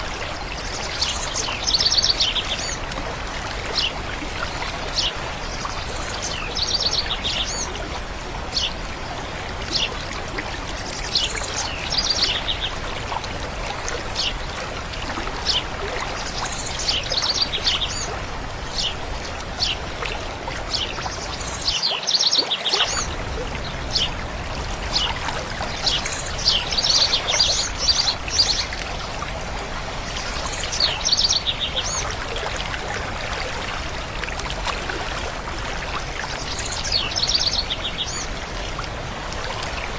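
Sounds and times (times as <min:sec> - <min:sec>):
stream flowing: 0:00.0 - 0:39.9
songbirds singing trilled phrases: 0:30.5 - 0:32.0.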